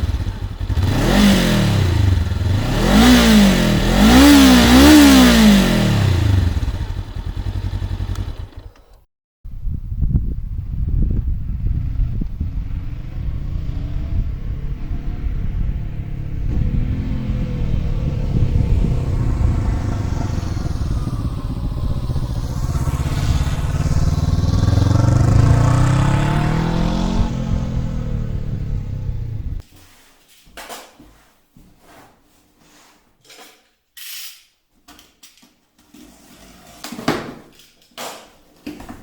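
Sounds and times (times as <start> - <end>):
motorcycle engine passing by: 0.0 - 9.0, 11.4 - 29.6.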